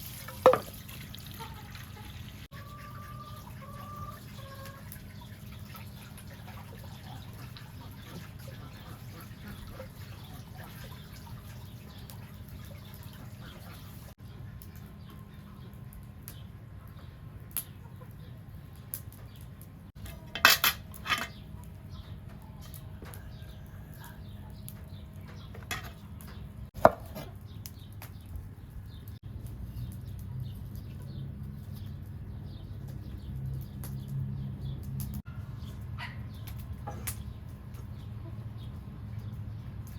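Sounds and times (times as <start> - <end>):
pots and utensils clattering: 0.2 - 0.9, 20.0 - 21.4, 25.6 - 26.0.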